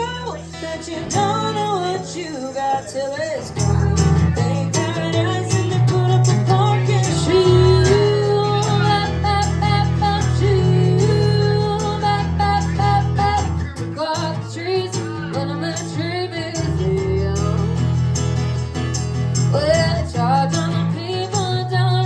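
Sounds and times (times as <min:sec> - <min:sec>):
band playing a song: 0:00.0 - 0:14.0
person singing: 0:00.0 - 0:18.2.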